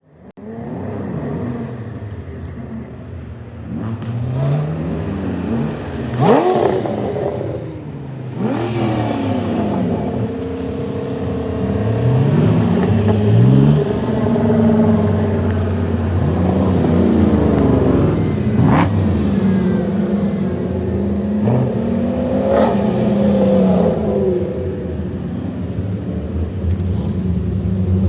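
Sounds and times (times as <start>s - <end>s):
car engine accelerating and revving: 3.6s - 28.0s.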